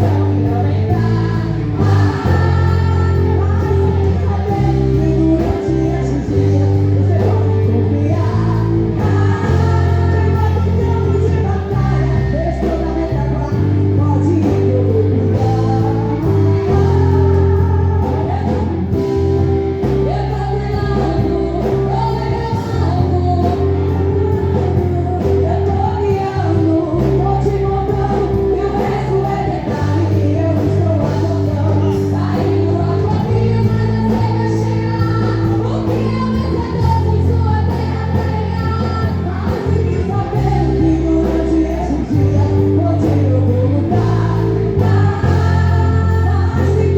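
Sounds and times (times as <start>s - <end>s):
band with bass and guitar: 0.0s - 46.9s
gospel singing: 0.0s - 46.9s
steady drum beat: 13.5s - 46.9s.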